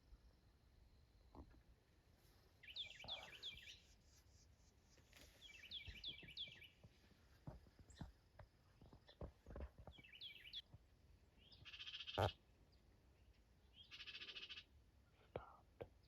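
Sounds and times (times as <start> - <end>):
small bird chirping: 2.6 - 7.1, 7.8 - 10.7, 11.4 - 14.8.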